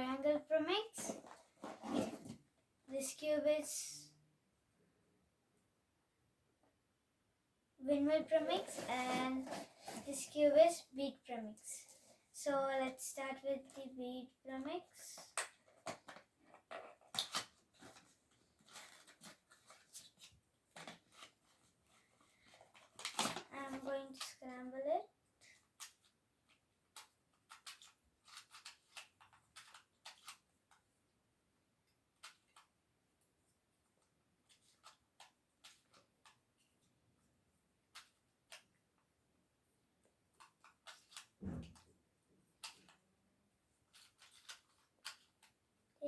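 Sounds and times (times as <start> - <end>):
plastic puzzle clicking: 25.7 - 30.8, 32.1 - 32.8, 37.9 - 38.7, 40.4 - 41.4, 42.6 - 43.0, 43.9 - 45.6.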